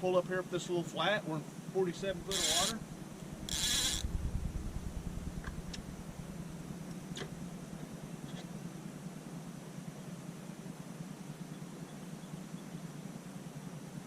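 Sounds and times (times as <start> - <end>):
electric motor humming: 1.9 - 8.2.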